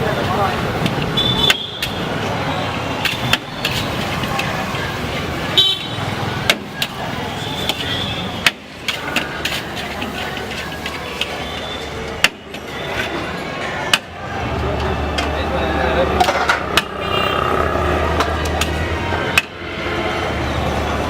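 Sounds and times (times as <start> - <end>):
street traffic noise: 0.0 - 21.0
vehicle horns honking: 1.2 - 1.8, 5.6 - 6.1, 16.7 - 18.0.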